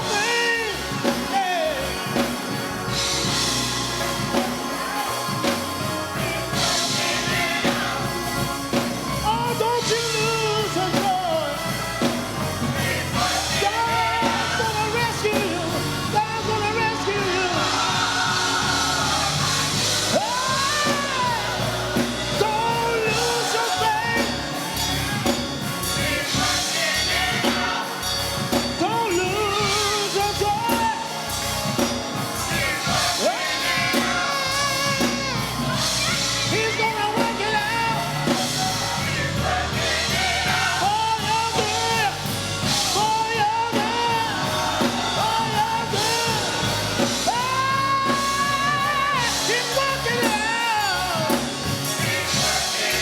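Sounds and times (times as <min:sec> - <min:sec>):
band with drums: 0:00.0 - 0:53.0
gospel singing: 0:00.0 - 0:53.0.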